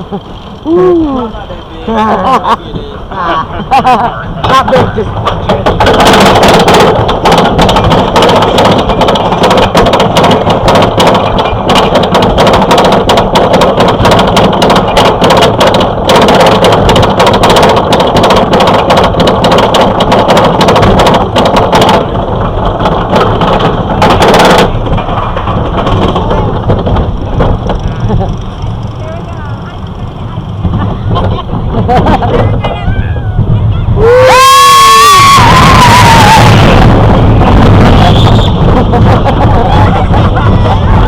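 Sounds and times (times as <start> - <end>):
roller coaster rattling on track: 0.0 - 41.0
wind buffeting microphone: 4.3 - 41.0.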